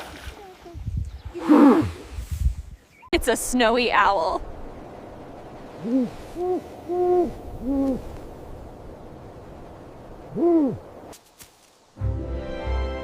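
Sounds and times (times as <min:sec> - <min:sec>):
owl hooting: 0:05.7 - 0:08.2, 0:10.3 - 0:10.9.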